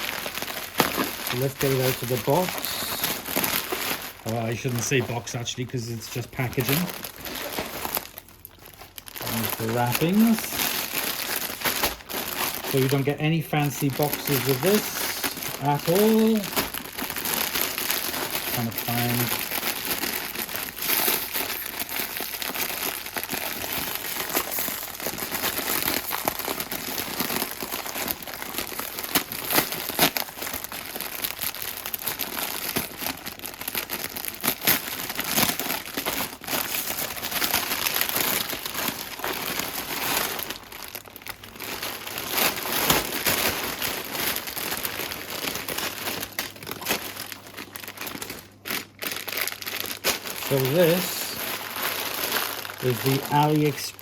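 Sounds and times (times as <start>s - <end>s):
packaging crinkling and rustling: 0.0s - 54.0s.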